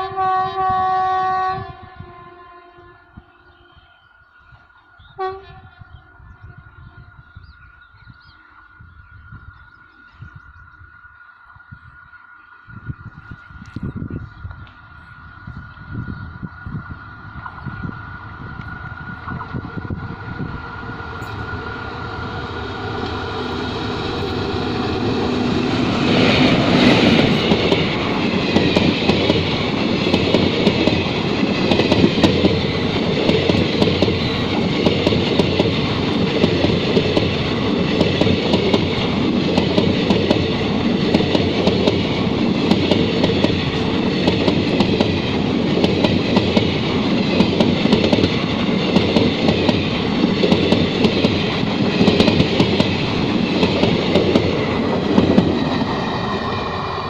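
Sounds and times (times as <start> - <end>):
train passing slowly: 0.0 - 57.0
rattling track noise: 12.6 - 57.0.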